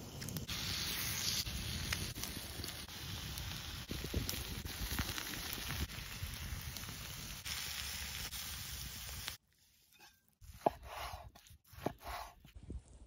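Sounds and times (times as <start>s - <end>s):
meat sizzling on hot stone: 0.1s - 9.4s.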